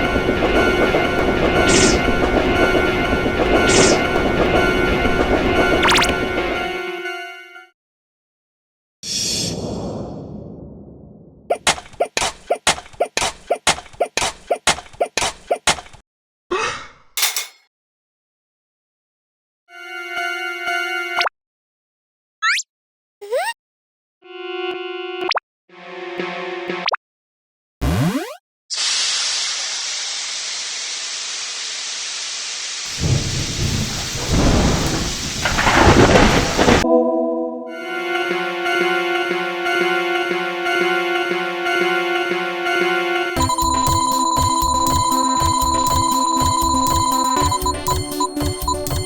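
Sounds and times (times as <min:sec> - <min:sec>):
rolling thunder: 0:00.0 - 0:06.4, 0:09.6 - 0:11.5, 0:32.9 - 0:36.8
heavy rain: 0:00.0 - 0:06.6, 0:29.0 - 0:36.8
railroad crossing bell ringing: 0:00.0 - 0:07.0.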